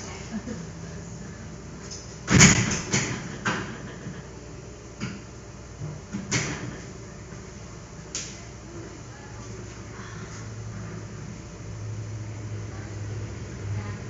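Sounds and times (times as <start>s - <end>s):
loud bang: 2.3s - 3.0s.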